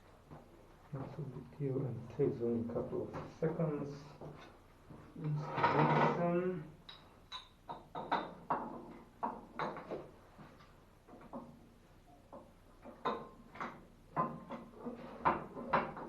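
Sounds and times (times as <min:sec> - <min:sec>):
plumbing fittings clicking and knocking: 0:06.8 - 0:10.0, 0:12.3 - 0:16.0.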